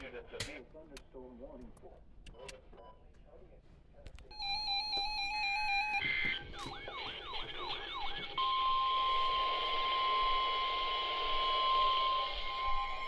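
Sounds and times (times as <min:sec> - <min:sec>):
electronic siren tones sweeping down: 0:04.4 - 0:13.0.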